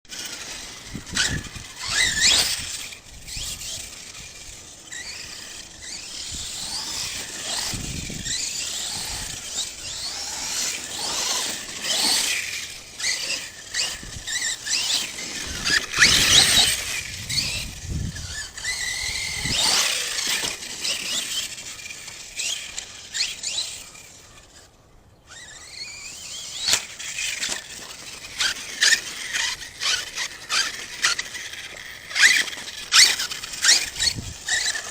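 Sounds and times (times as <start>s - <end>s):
electric motor whining: 0.1s - 34.9s.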